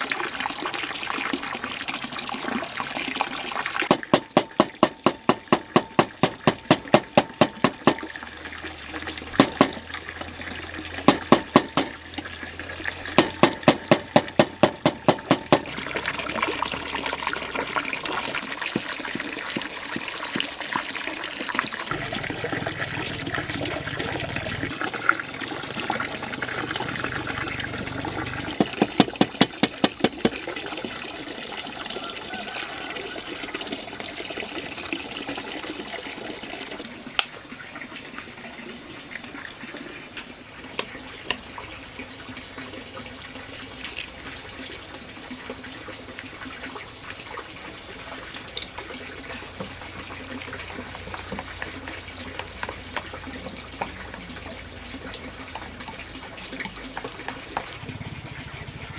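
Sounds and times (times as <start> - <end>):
water running and splashing: 0.0 - 58.9
quick knocks: 11.1 - 12.0, 13.2 - 15.7.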